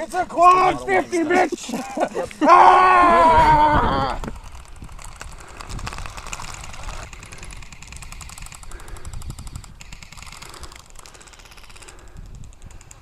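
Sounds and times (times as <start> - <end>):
airsoft guns firing full auto: 4.4 - 13.0.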